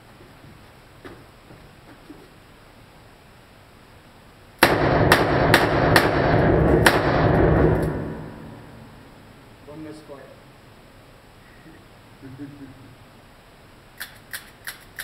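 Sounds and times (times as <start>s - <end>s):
gunshots echoing indoors: 4.6s - 9.0s.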